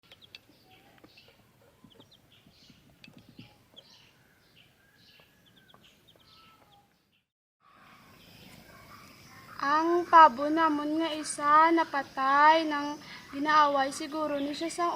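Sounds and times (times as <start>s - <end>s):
chicks peeping: 0.0s - 7.2s.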